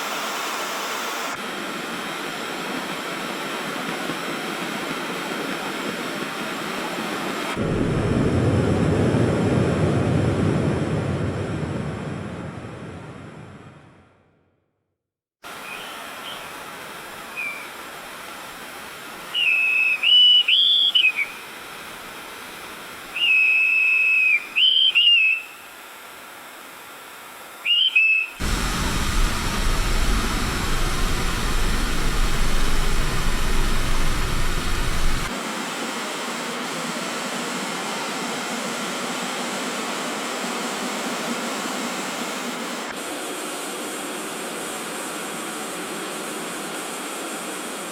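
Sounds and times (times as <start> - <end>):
low rumble: 7.6 - 14.1, 28.4 - 35.3
whistle blasts: 23.2 - 25.4
background hiss: 27.4 - 35.3
traffic noise: 28.4 - 35.3.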